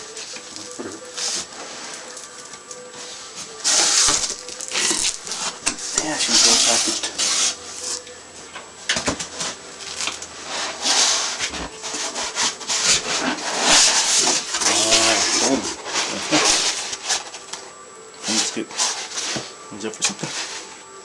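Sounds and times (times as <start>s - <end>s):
cardboard rustling and scraping: 2.7s - 8.0s, 9.0s - 17.5s, 18.2s - 20.7s.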